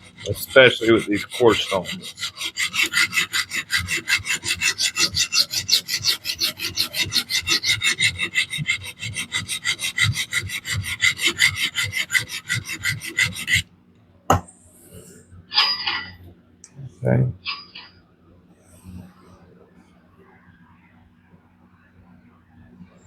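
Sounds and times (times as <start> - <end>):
sharpening plate rasping on knife: 0.0 - 13.6, 15.6 - 16.2.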